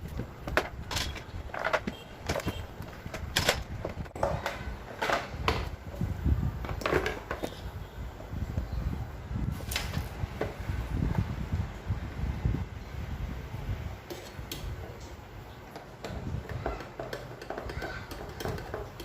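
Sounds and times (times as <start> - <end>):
plastic parts knocking and clicking: 0.0 - 5.8, 6.6 - 7.6, 15.7 - 19.0.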